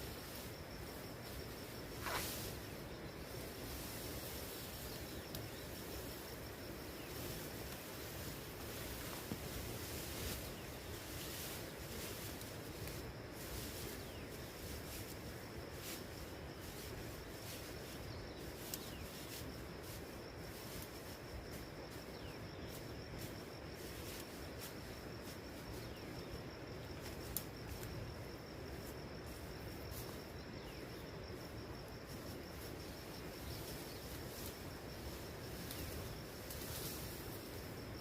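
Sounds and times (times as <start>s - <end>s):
background hiss: 0.0s - 38.0s
insects chirring: 0.0s - 38.0s
light ticks: 27.3s - 27.9s.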